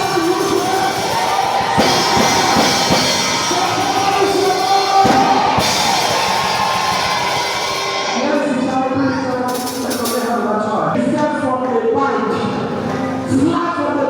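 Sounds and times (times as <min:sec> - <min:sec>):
loud band music with drums: 0:00.0 - 0:08.7.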